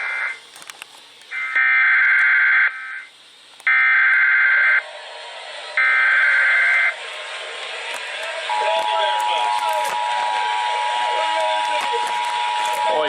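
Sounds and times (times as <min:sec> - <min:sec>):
raspy digital warble bursts: 0:03.7 - 0:07.8.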